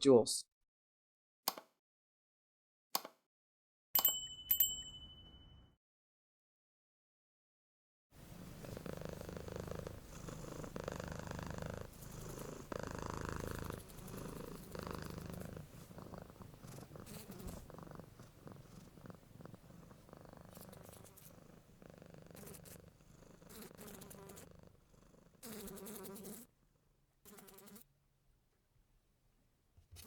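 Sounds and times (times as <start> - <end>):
cat purring: 8.2 - 26.5.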